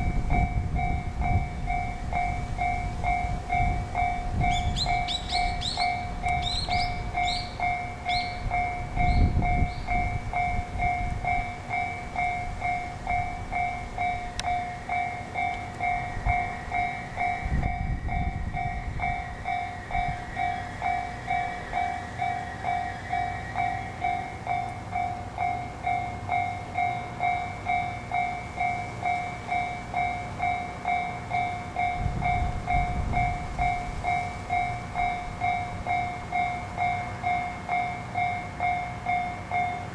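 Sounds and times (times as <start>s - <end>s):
train rumble: 0.0s - 39.9s
level crossing alarm ringing: 0.1s - 39.9s.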